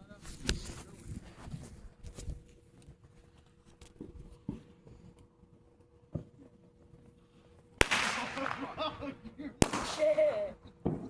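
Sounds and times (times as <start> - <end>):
faint firework pops: 7.8 - 8.9, 9.6 - 10.2
loud firework bang: 7.8 - 8.9, 9.6 - 10.2.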